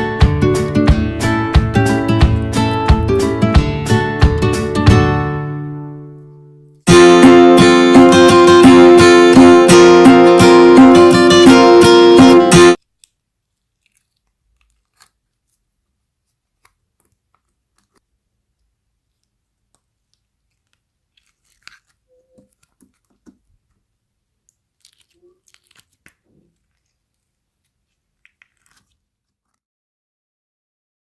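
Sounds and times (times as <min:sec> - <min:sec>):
faint small clicks and crackles: 0:12.8 - 0:23.8, 0:24.4 - 0:29.6.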